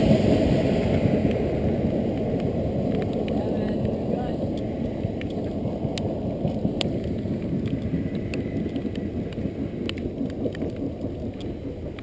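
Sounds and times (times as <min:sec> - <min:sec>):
wind buffeting microphone: 0:00.0 - 0:12.0
faint ticks: 0:04.5 - 0:12.0.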